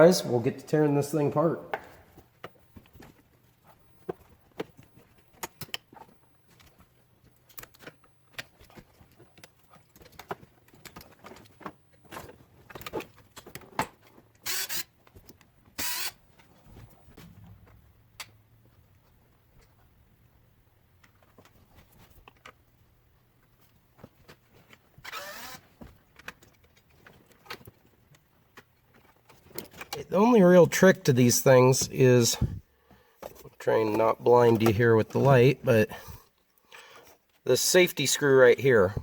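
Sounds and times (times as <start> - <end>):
hand tools and plastic trim clicking: 4.0 - 16.6.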